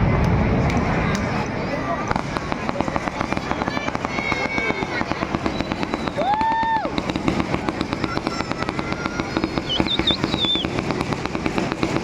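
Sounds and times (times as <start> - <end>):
firecracker bangs: 2.0 - 12.0
short whistling tone: 9.6 - 10.7.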